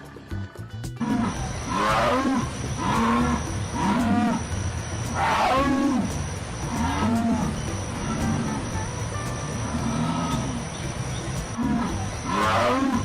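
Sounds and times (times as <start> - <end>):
jaguar grunting calls: 1.0 - 8.7, 9.6 - 13.0.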